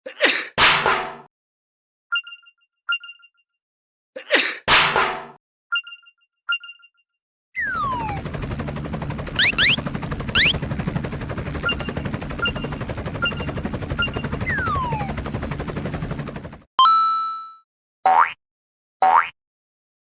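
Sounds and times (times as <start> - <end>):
quick rising chirps: 9.4 - 10.6.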